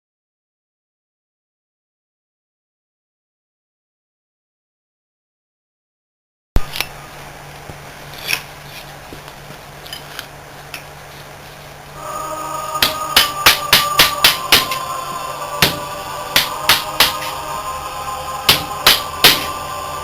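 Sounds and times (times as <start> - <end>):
hammer striking steel: 12.7 - 17.5, 18.3 - 19.8.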